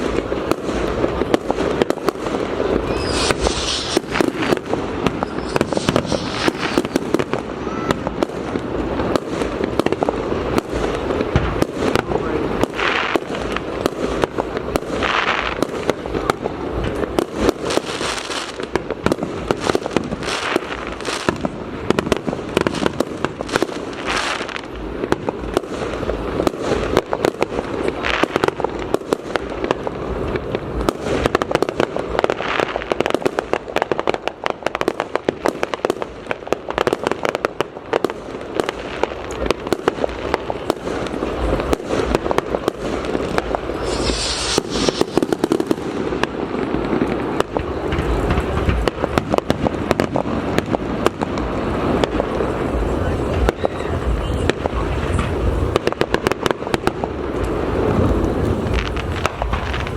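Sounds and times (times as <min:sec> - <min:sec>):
fireworks bangs and crackling: 0:00.0 - 0:59.9
fireworks hissing: 0:00.0 - 0:59.9.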